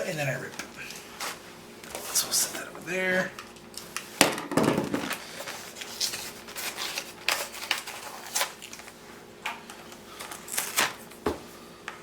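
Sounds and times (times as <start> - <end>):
packaging rustling: 4.9 - 9.0, 10.2 - 11.1.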